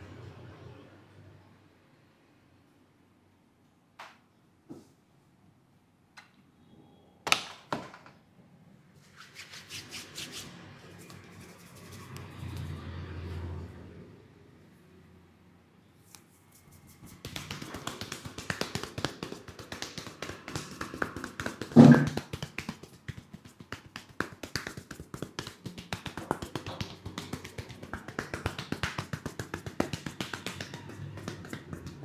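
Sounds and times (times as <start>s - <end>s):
hands tapping and slapping head: 17.0s - 32.0s
loud smack: 21.7s - 22.2s.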